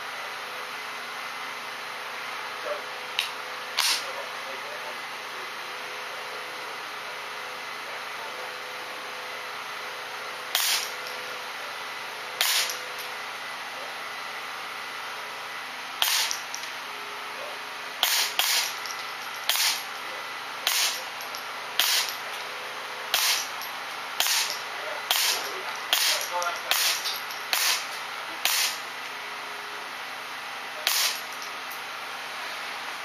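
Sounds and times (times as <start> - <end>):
suppressed rifle shots: 3.8 - 4.0, 10.6 - 11.0, 16.0 - 16.4.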